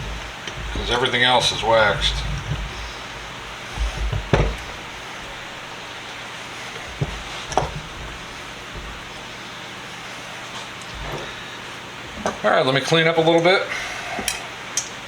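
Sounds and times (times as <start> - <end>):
light handling knocks: 0.0 - 11.4
steady background hiss: 0.0 - 15.0.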